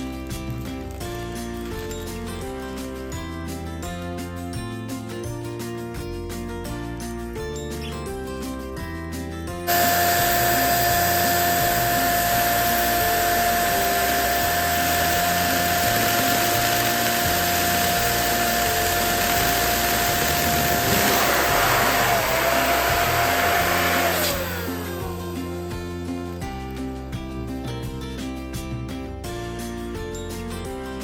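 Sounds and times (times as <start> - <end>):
electric balloon pump whining: 9.7 - 25.6.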